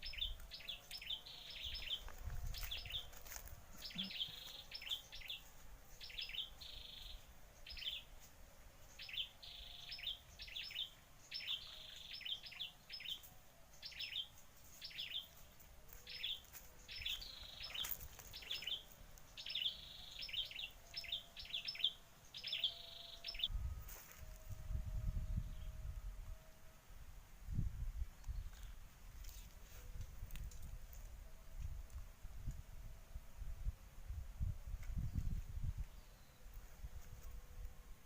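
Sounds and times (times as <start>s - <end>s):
small bird chirping: 16.1s - 23.5s.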